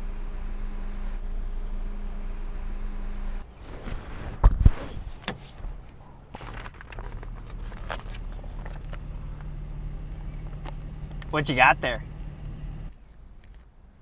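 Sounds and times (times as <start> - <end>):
rustling and handling noises: 3.4 - 11.4
loud thumps: 3.4 - 13.0
machine hum: 5.2 - 13.6.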